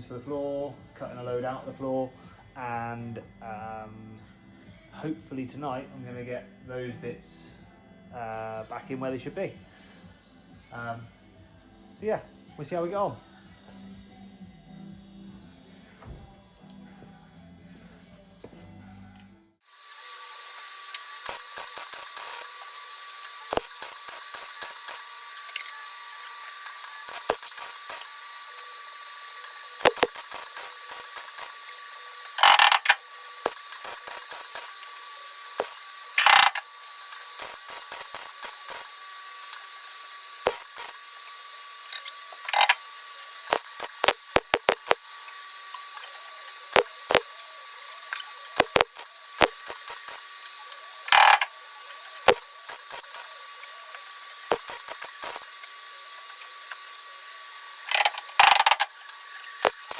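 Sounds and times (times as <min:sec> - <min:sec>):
tools clicking and knocking: 0:27.1 - 0:28.1, 0:29.8 - 0:31.6, 0:32.3 - 0:34.8, 0:35.6 - 0:38.9, 0:40.5 - 0:41.0, 0:41.9 - 0:42.8, 0:43.5 - 0:45.0, 0:48.1 - 0:50.2, 0:50.8 - 0:51.5, 0:52.2 - 0:53.3, 0:54.5 - 0:55.5, 0:57.9 - 0:58.9, 0:59.6 - 0:59.9.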